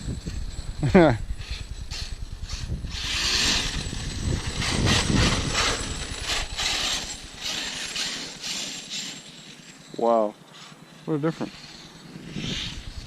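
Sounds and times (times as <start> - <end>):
rc truck drivetrain whir: 0.0 - 13.0
tyres scrabbling over ground: 2.9 - 12.1.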